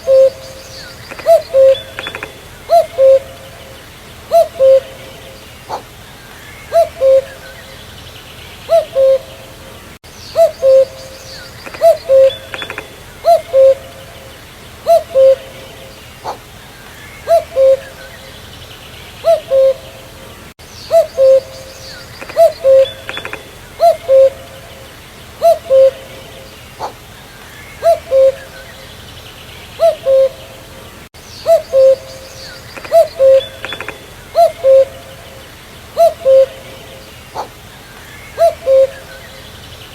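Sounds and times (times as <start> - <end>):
cuckoo calling: 0.0 - 8.0, 8.6 - 18.5, 19.2 - 29.0, 29.8 - 39.6
faint bird chirps: 0.0 - 9.5, 10.1 - 24.8, 31.2 - 39.9.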